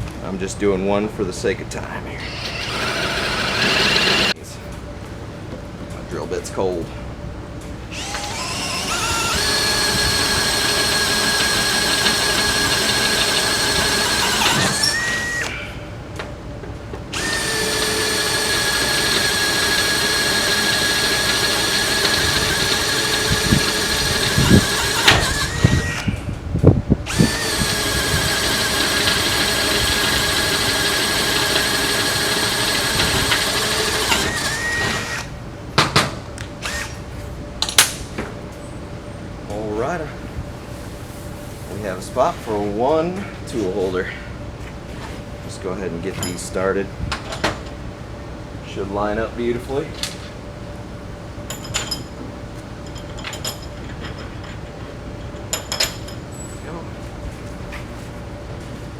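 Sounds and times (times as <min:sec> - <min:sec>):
power drill boring through metal: 0:02.2 - 0:04.4, 0:08.0 - 0:15.8, 0:17.1 - 0:26.2, 0:27.1 - 0:35.3, 0:36.6 - 0:37.0.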